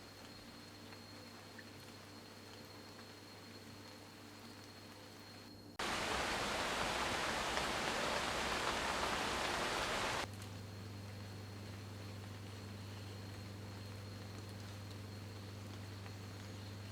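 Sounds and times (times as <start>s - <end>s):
water rushing: 5.8s - 10.2s.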